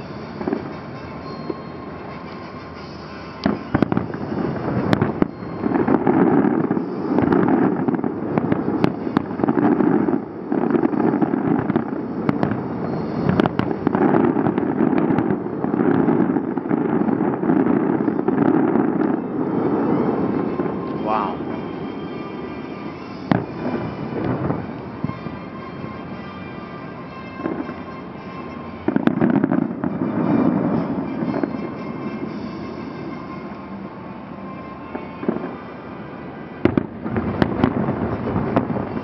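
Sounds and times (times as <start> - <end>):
firework shell bursts: 0.0 - 33.6
fireworks crackle: 0.0 - 39.0
sharp firework reports: 3.3 - 25.2.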